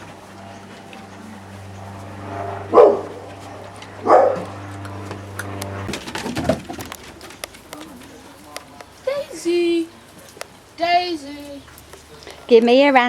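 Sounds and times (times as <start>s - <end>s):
steady low hum: 0.0s - 12.5s
dog barking: 2.7s - 3.2s, 4.0s - 4.5s.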